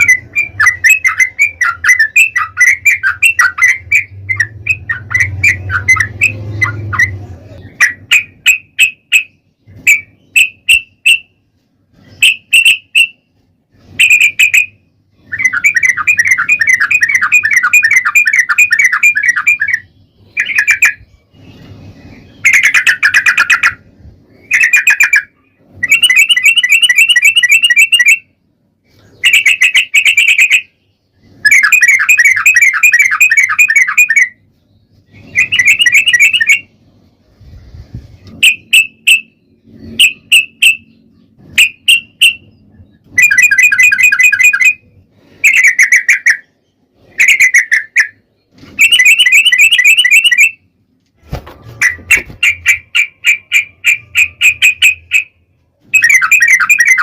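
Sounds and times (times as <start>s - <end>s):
bulbul singing: 0.0s - 37.2s, 38.2s - 50.8s, 51.8s - 57.0s.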